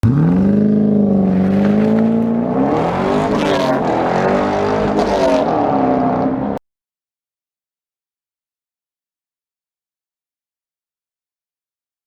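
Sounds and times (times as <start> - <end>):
car engine revving: 0.0 - 6.6.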